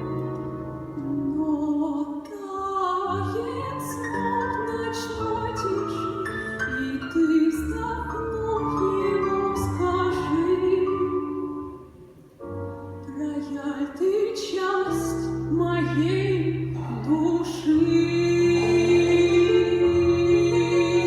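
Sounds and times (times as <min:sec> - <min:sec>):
musical accompaniment: 0:00.0 - 0:01.8, 0:15.2 - 0:21.0
woman singing with vibrato: 0:01.0 - 0:12.0, 0:13.1 - 0:21.0.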